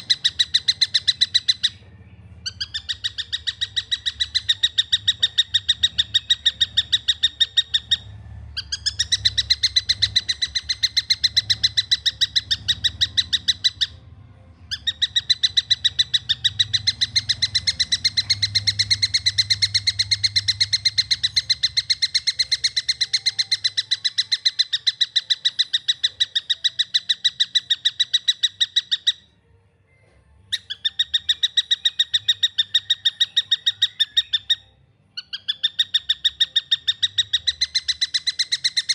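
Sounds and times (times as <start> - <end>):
kingfisher sharp chirps: 14.7 - 29.2.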